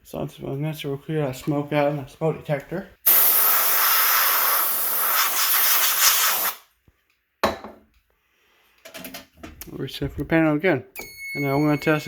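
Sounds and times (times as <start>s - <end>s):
compressed air hissing: 3.1s - 6.7s.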